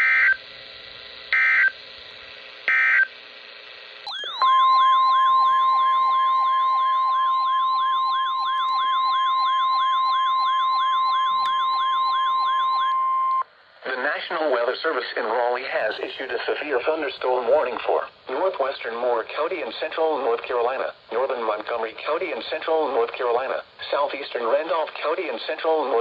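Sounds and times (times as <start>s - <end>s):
steady alert tone: 4.1s - 10.9s
rising siren sweep: 4.1s - 13.0s.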